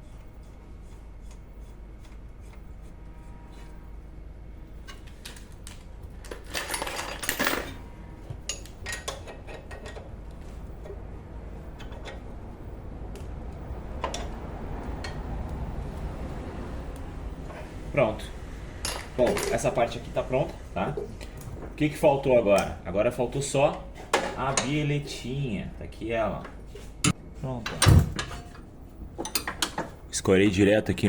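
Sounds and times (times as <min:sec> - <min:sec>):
metal tools clinking on steel: 0:06.2 - 0:07.9, 0:18.8 - 0:20.6.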